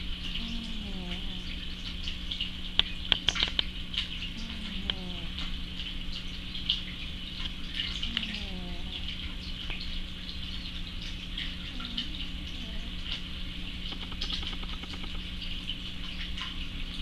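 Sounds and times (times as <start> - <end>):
steady hum and hiss: 0.0 - 17.0.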